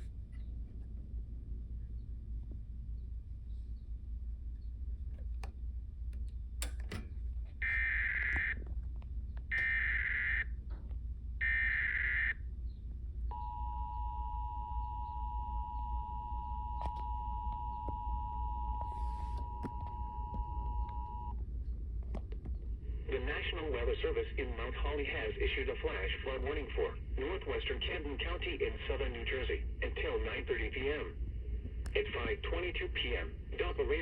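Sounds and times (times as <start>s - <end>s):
low hum: 0.0s - 34.0s
two-tone attention signal: 13.3s - 21.3s.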